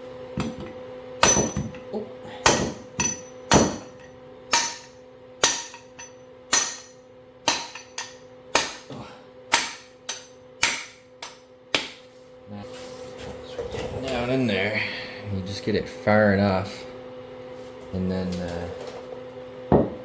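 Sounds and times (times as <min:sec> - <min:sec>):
hammer striking metal: 0:01.2 - 0:01.8, 0:02.4 - 0:08.9, 0:09.5 - 0:12.0.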